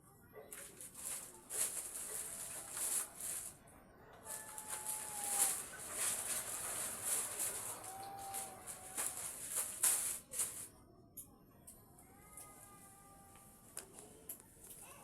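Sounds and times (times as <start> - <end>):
plastic packaging rustling: 0.5 - 3.6, 4.2 - 10.7.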